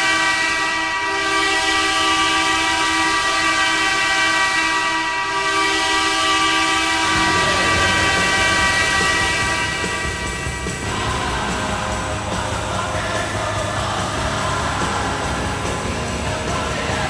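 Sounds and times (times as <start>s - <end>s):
goal horn blast: 0.0s - 11.4s.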